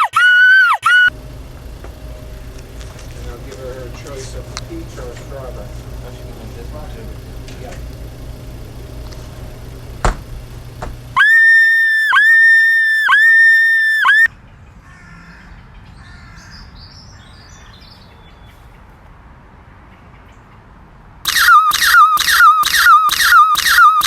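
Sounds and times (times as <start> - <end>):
loud high-pitched tone: 0.0 - 14.3, 21.3 - 24.0
low steady hum: 0.9 - 11.7.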